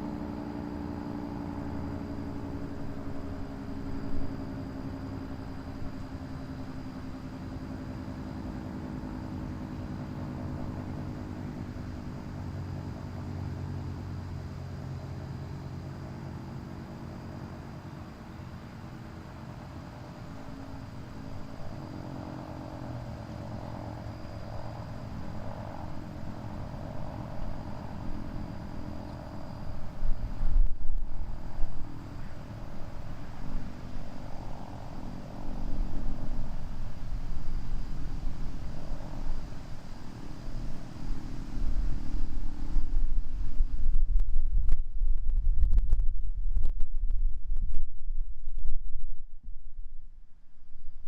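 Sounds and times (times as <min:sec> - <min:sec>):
wind buffeting microphone: 0:24.4 - 0:50.1.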